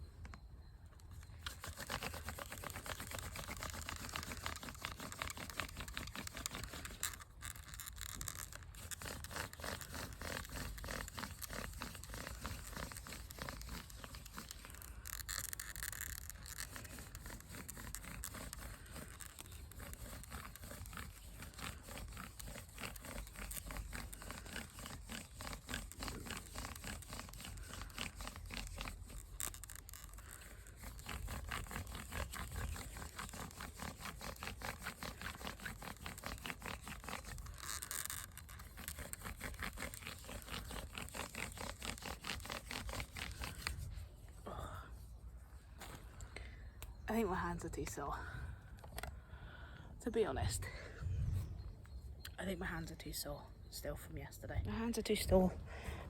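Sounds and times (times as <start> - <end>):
wooden spindle grinding in socket: 1.1 - 43.8.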